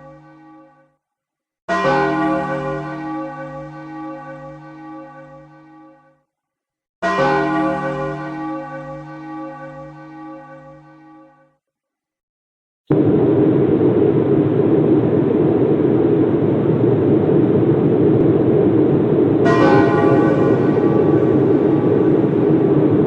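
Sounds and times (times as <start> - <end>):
deep bell tolling: 19.4 - 23.0.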